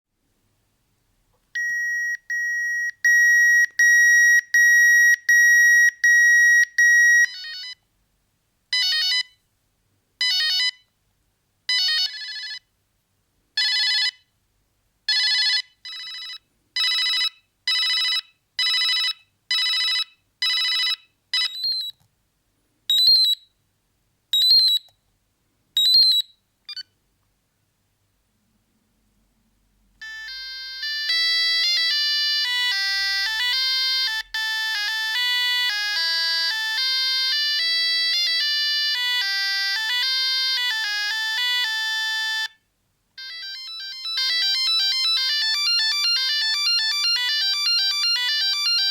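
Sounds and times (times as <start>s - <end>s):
mobile phone beeping ringtones: 1.6s - 7.8s, 8.8s - 9.4s, 10.2s - 10.8s, 11.7s - 12.6s, 13.6s - 14.2s, 15.1s - 22.0s, 25.8s - 26.9s, 30.0s - 42.6s, 43.2s - 48.9s.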